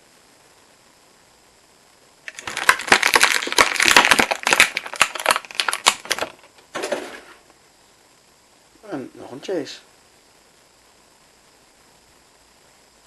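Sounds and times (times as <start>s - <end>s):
toy packaging crinkling: 2.3s - 6.5s.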